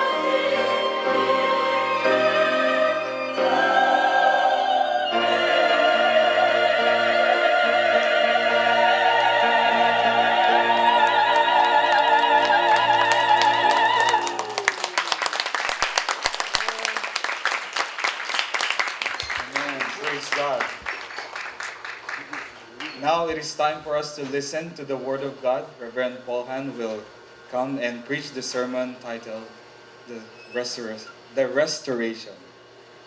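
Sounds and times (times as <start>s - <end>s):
choir singing with orchestra: 0.0s - 14.6s
applause: 11.3s - 23.0s.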